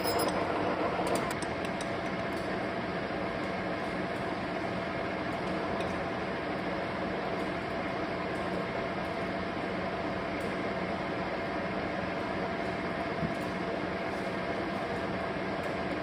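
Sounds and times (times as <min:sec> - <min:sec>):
metal lathe humming and whirring: 0:00.0 - 0:02.2.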